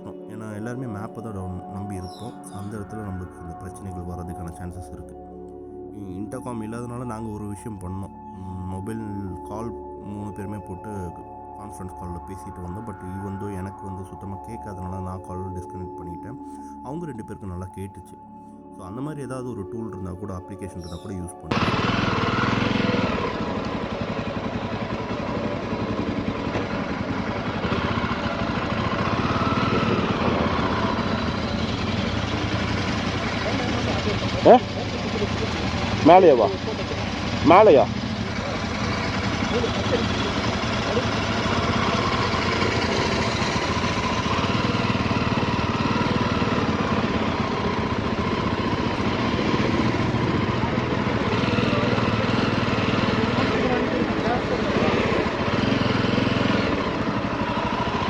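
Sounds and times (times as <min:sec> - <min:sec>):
motorcycle engine running: 0:21.5 - 0:58.0.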